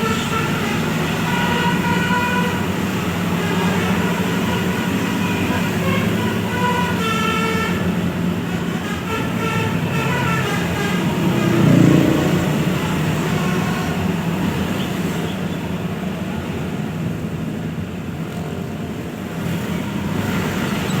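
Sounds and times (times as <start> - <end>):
melodic bus horn: 0.0 - 15.7
bus engine running: 0.0 - 21.0
roadside traffic: 0.0 - 21.0.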